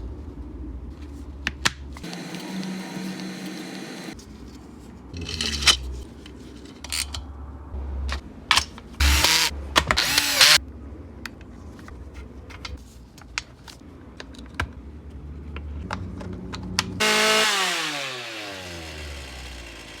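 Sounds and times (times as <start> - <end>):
chainsaw engine idling and revving: 2.1 - 4.2, 9.0 - 10.6, 17.0 - 20.0.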